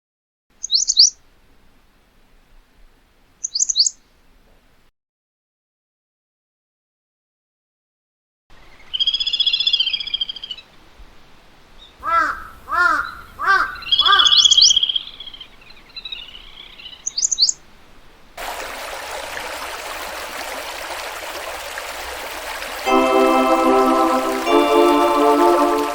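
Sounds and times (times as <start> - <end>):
songbirds chirping: 0.5 - 4.4, 8.6 - 18.4
crow cawing: 12.0 - 15.4
rushing hiss: 18.4 - 25.9.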